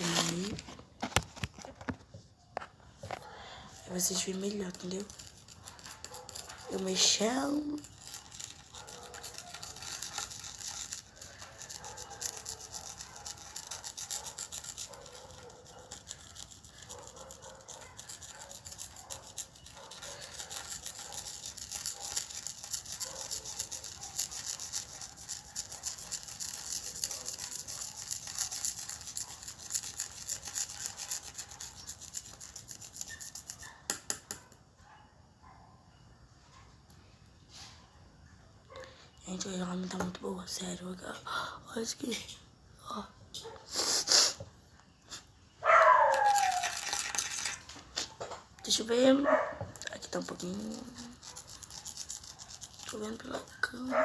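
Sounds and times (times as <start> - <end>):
pen stirring slime: 0.0 - 2.0, 3.0 - 33.8, 45.8 - 47.6, 48.6 - 54.0.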